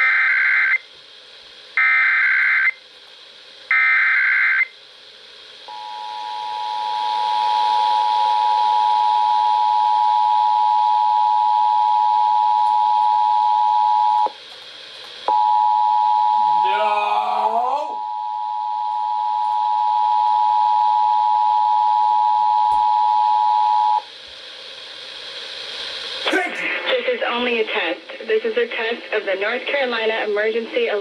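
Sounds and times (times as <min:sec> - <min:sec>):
radio hiss: 0:00.0 - 0:15.4, 0:16.2 - 0:18.6, 0:19.9 - 0:31.0.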